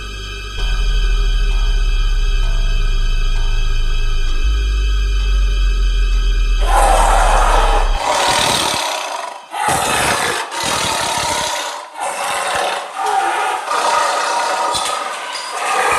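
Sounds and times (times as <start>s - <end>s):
tiger snarling and hissing: 6.6s - 15.9s.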